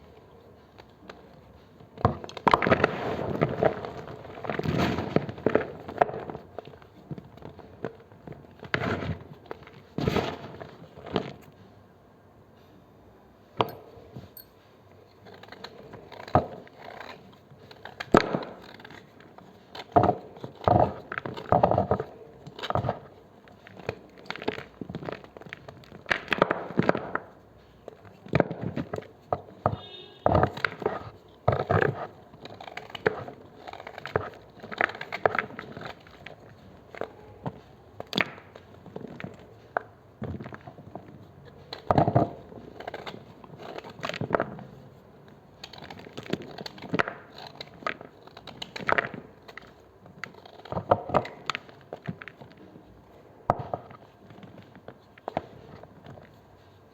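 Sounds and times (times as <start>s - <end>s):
knife crushing chalk: 15.1s - 38.6s, 39.2s - 44.8s, 45.6s - 52.7s.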